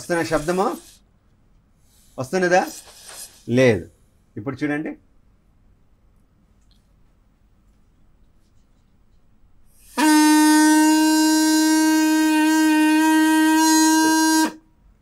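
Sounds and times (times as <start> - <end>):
buzzy straw reed note: 0.0 - 1.0, 9.8 - 14.6.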